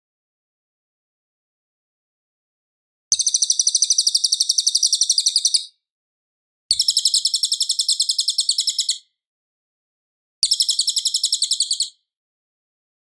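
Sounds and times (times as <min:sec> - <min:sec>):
bird rapid high trill: 0:03.1 - 0:05.7.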